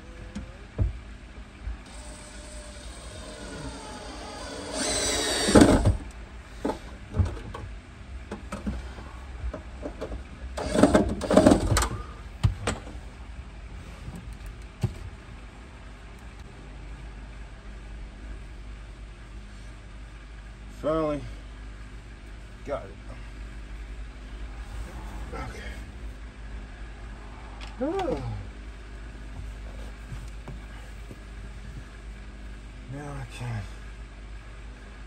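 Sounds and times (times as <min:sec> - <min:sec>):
steady low hum: 0:00.0 - 0:35.0
scraping with pitched whine: 0:24.3 - 0:28.8.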